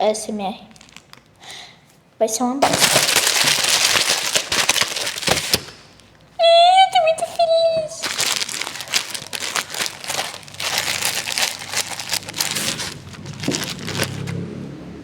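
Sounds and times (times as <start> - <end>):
packaging crinkling: 0.8 - 1.4, 2.6 - 6.2, 7.1 - 14.4.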